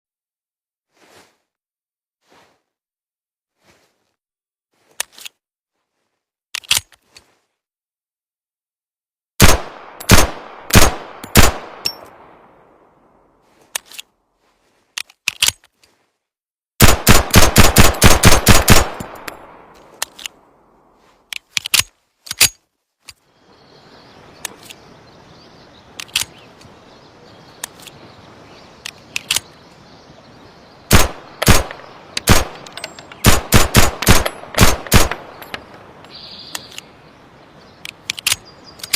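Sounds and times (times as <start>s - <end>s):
pistol shots: 9.4s - 12.0s, 16.8s - 19.2s, 30.9s - 32.6s, 33.2s - 35.4s
pistol metallic clicks: 37.8s - 38.9s.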